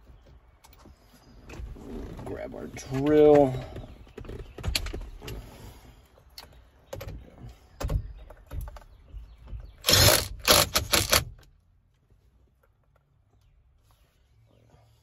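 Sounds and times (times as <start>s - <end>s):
cordless drill bursts: 9.8s - 11.3s.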